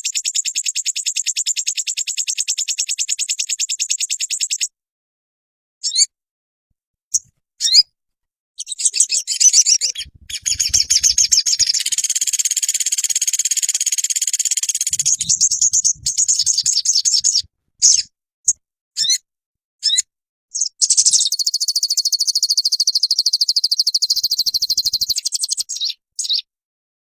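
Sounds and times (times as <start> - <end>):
songbird high trill: 8.6 - 18.1, 20.6 - 26.4.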